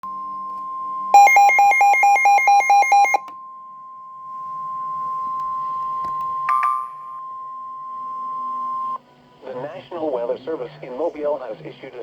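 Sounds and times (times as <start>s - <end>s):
electronic beeping alarm: 0.8s - 9.0s
steady alarm tone: 0.9s - 5.7s.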